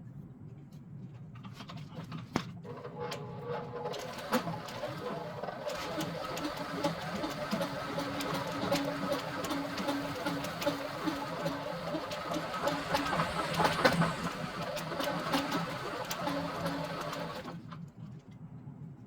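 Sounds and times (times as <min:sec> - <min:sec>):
electric drill motor running: 0:09.3 - 0:17.5.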